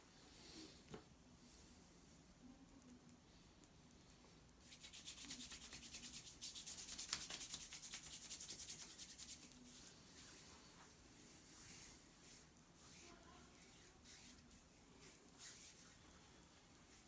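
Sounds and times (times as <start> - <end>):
hands rubbing over skin: 4.6 - 10.9, 11.5 - 17.0.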